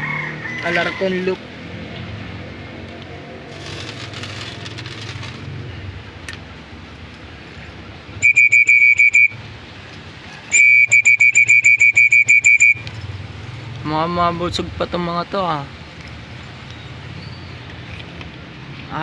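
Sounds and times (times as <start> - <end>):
pulsing high whistle: 8.2 - 9.4, 10.5 - 12.9.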